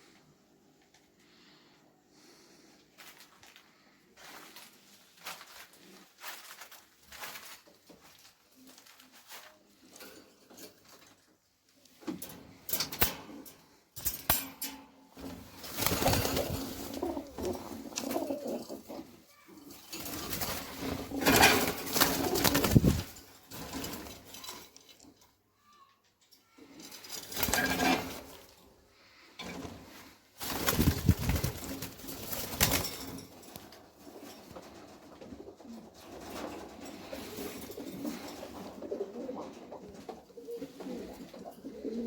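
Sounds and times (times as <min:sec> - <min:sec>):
pigeons cooing: 0:15.9 - 0:19.2, 0:37.0 - 0:42.0.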